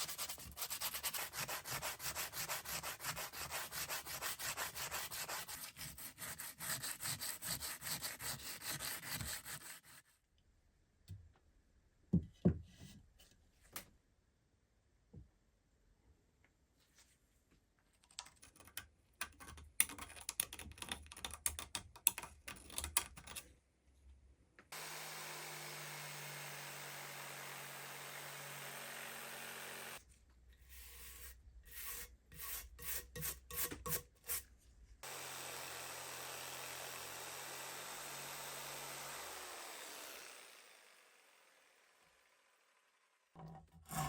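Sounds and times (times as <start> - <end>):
hand tools clicking and scraping wood: 0.0 - 10.0.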